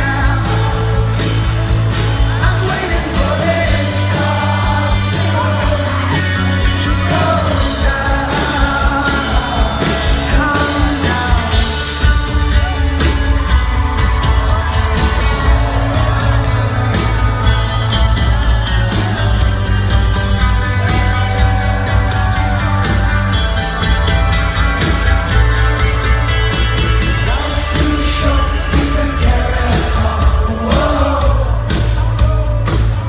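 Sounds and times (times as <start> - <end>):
lead vocal singing: 0.0 - 18.4, 27.1 - 33.0
live rock band playing: 0.0 - 33.0.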